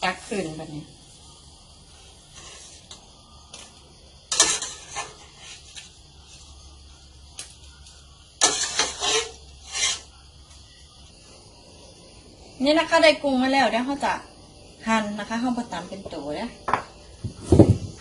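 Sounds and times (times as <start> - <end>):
utensil scraping cooking pot: 4.3 - 5.9, 8.4 - 10.1.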